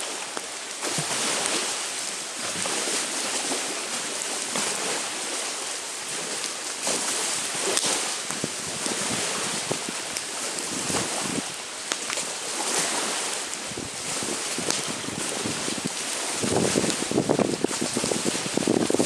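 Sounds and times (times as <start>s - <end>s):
campfire crackling and popping: 0.0s - 1.7s, 6.3s - 19.0s
small waves washing on shore: 0.0s - 19.0s
steady wind: 0.0s - 19.0s.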